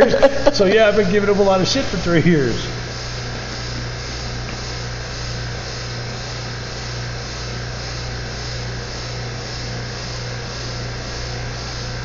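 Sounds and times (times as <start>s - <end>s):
machine humming: 0.0s - 12.0s
machine hiss: 0.1s - 4.9s.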